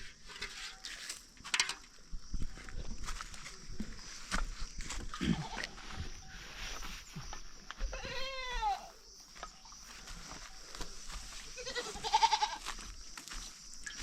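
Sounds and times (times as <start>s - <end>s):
goat bleating: 7.9s - 8.9s, 11.6s - 12.6s.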